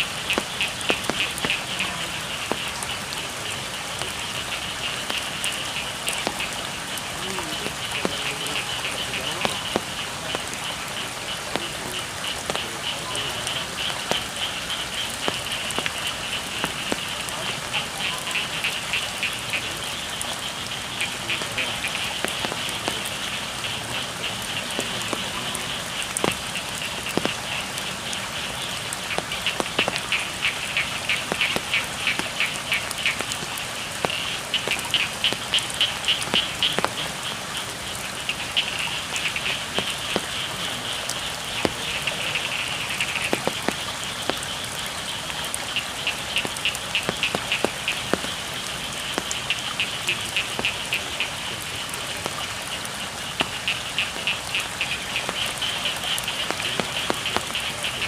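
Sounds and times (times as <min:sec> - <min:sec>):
frogs calling: 0:00.0 - 0:58.0
rain falling: 0:00.0 - 0:58.0
sharp taps: 0:27.1 - 0:27.4.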